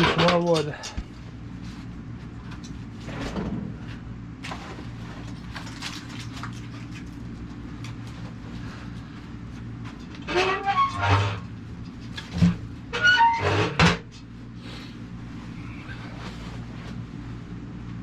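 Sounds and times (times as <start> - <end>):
low mechanical hum: 0.0 - 18.0
wood creaking and scraping: 9.0 - 14.1.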